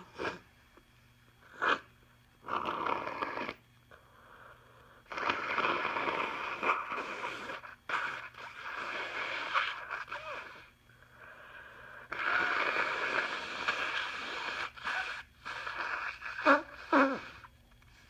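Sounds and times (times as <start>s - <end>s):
sharp nasal snort: 1.5s - 3.6s, 5.1s - 10.7s, 12.0s - 17.5s
woman blowing her nose: 5.1s - 10.7s, 12.1s - 17.5s.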